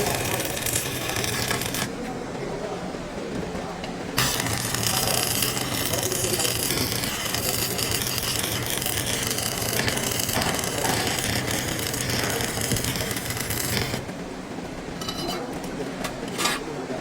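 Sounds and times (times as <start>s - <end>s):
welding arc crackling and hissing: 0.0s - 2.0s, 4.2s - 14.3s.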